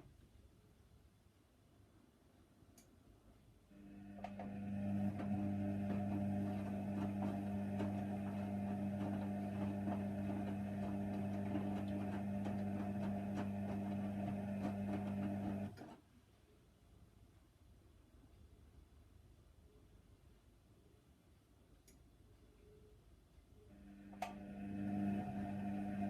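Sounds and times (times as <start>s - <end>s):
washing machine motor hum: 3.7s - 16.0s, 23.7s - 26.0s.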